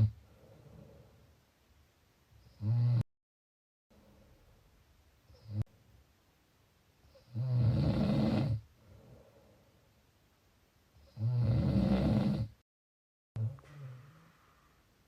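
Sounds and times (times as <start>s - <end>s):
snoring: 2.5s - 3.0s, 5.3s - 5.6s, 7.1s - 8.6s, 11.0s - 12.6s.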